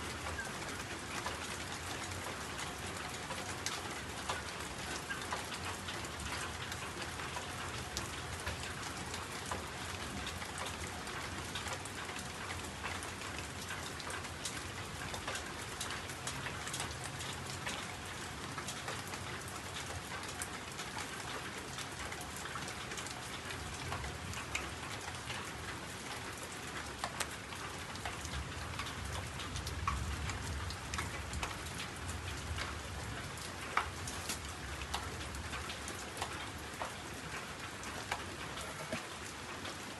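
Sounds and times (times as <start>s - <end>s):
steady rain patter: 0.0s - 39.9s.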